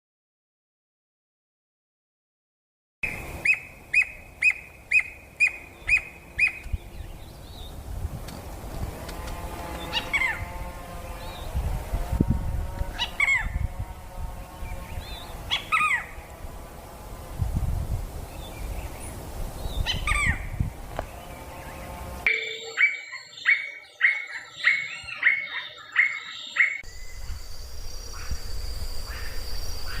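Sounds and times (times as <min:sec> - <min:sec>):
bird whistled calls: 0:03.0 - 0:06.7, 0:22.3 - 0:30.0
faint high insect-like tone: 0:26.8 - 0:30.0.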